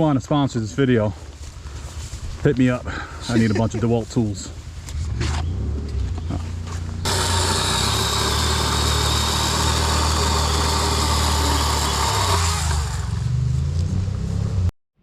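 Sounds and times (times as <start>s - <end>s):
engine running steadily: 4.8s - 14.1s.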